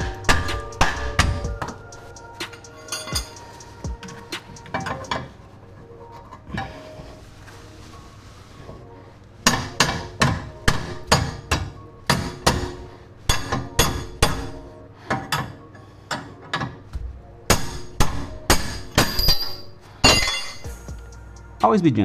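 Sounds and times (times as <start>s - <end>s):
hammer blows on metal: 17.5s - 21.6s.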